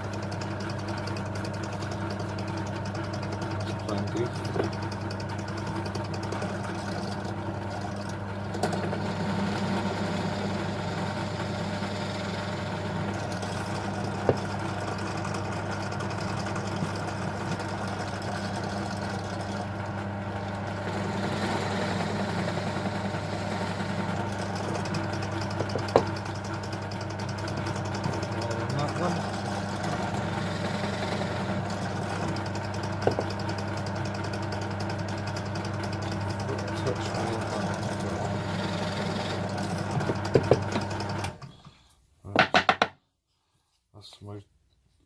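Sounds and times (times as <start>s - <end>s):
drill press motor running: 0.0s - 41.5s
sharp knocks: 42.4s - 43.0s.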